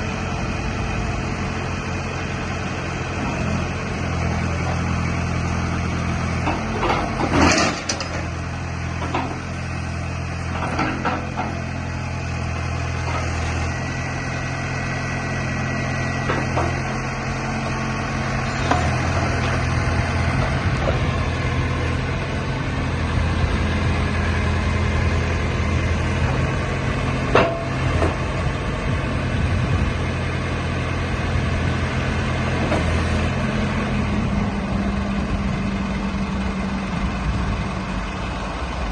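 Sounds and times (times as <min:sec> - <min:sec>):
diesel engine running: 0:00.0 - 0:38.9
metal knocks and clanks: 0:27.3 - 0:28.2.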